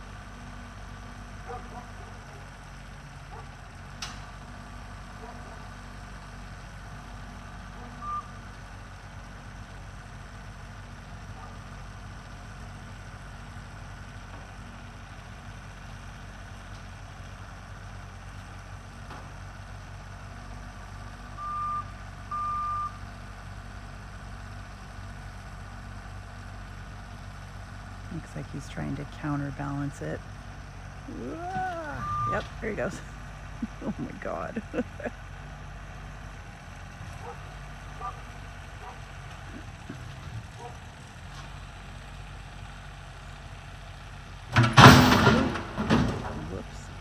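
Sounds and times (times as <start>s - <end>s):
heavy equipment engine running: 0.0s - 47.0s
backup alarm beeping: 32.0s - 32.6s.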